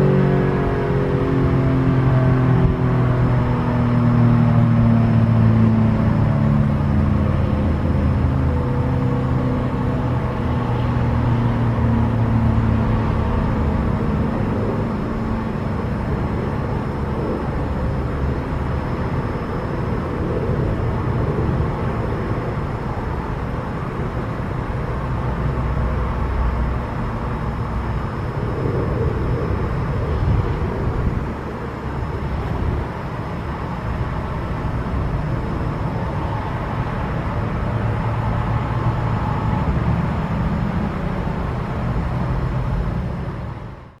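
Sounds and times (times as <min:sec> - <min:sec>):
road traffic cars passing: 0:00.0 - 0:44.0.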